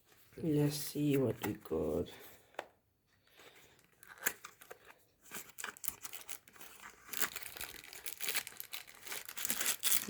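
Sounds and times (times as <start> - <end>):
packaging crinkling and crackling: 3.4 - 10.0.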